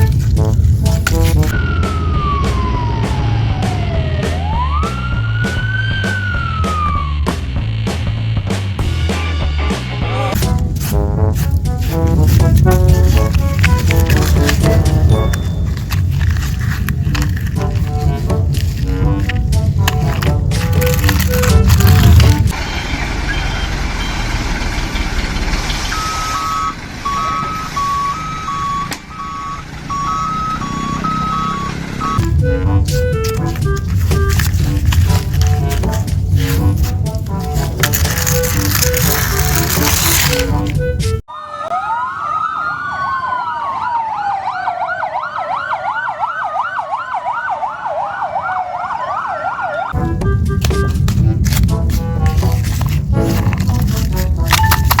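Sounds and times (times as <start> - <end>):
steady noisy rumble: 0.0 - 4.5, 50.0 - 55.0
music: 0.0 - 22.5, 32.2 - 41.2, 50.0 - 55.0
electronic siren yelp and wail: 1.5 - 7.4, 25.9 - 33.8, 40.8 - 50.0
electronic two-tone beeping: 25.9 - 32.3.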